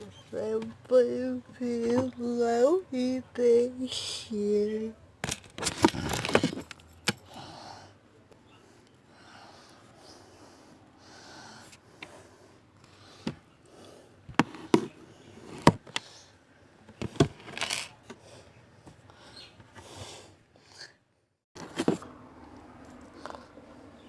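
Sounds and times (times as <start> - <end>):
objects scraping and rubbing: 5.3 - 7.0, 14.3 - 15.8, 17.0 - 18.0, 21.6 - 22.2.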